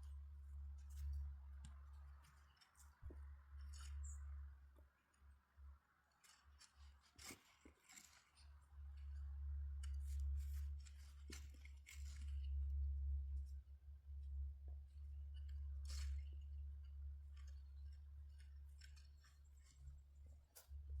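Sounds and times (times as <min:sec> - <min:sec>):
handling clicks and scrapes: 0:00.8 - 0:04.5, 0:06.0 - 0:12.8, 0:15.3 - 0:20.8.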